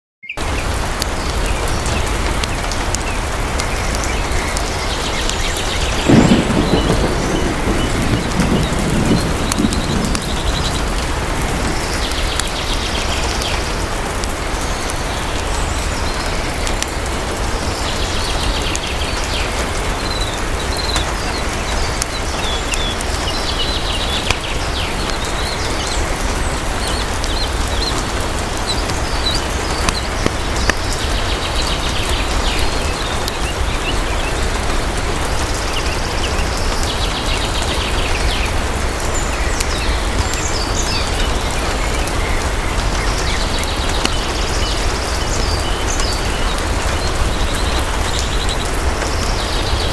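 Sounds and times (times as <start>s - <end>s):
steady rain: 1.0s - 49.9s
low continuous rumble: 5.9s - 12.4s.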